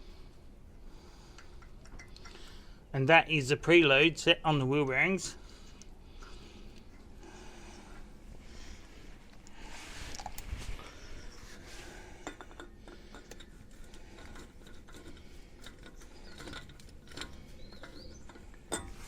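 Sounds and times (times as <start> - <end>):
rustle: 8.6 - 19.0.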